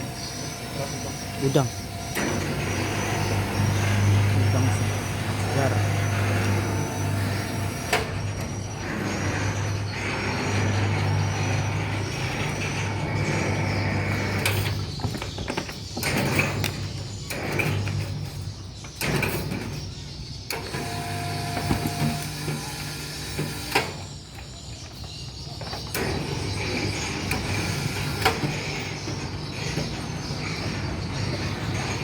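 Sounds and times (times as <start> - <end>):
electric hoist motor humming: 0.0 - 32.0.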